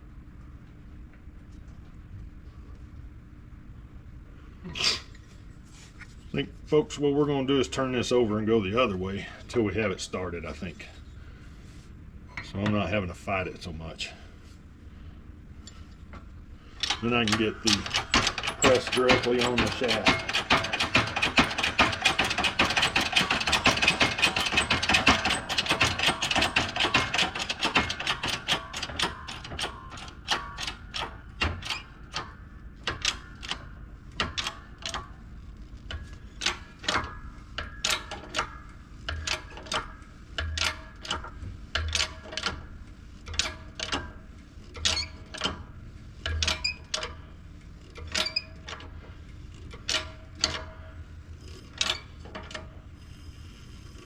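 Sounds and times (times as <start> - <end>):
hand press ratchet clicking: 16.8 - 33.6, 34.2 - 35.0, 39.1 - 41.2, 41.8 - 42.6, 46.2 - 47.2, 47.8 - 48.9, 49.6 - 50.8, 51.4 - 52.7.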